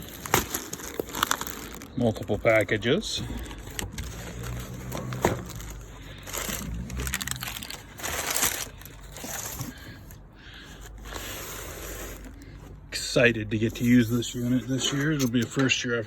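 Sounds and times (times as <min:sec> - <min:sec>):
packaging crinkling and rustling: 0:00.0 - 0:12.8.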